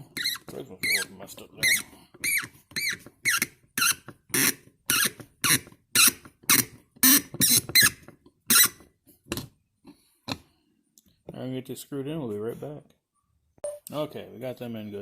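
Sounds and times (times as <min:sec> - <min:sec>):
screw squeaking when turned: 0:00.0 - 0:08.8.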